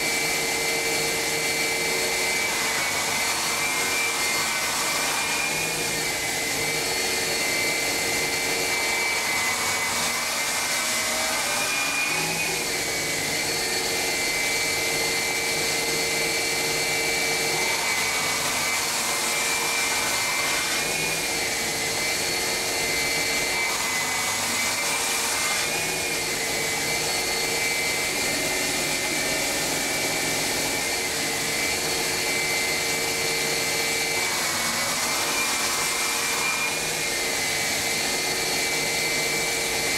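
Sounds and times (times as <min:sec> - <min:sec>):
belt grinding machine whining: 0:00.0 - 0:39.9.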